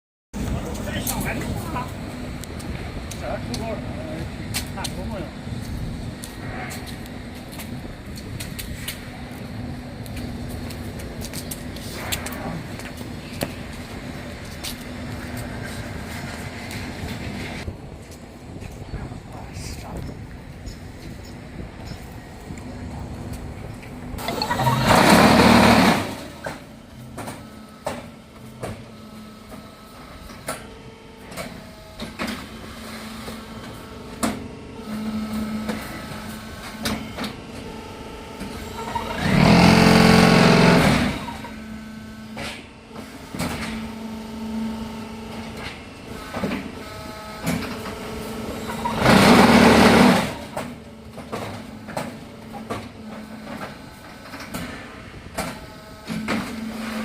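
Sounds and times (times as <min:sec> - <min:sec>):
machine hum: 0:20.2 - 0:57.0
mould vibrator bursts: 0:24.2 - 0:26.6, 0:38.4 - 0:42.3, 0:47.0 - 0:50.6.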